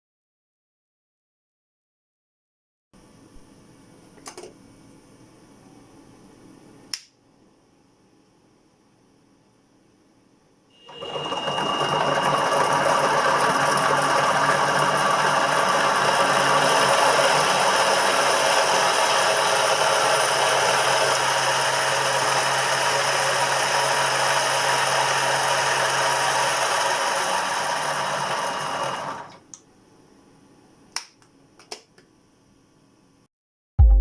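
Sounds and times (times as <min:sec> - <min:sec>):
milling machine spindle whirring: 0:10.9 - 0:29.4.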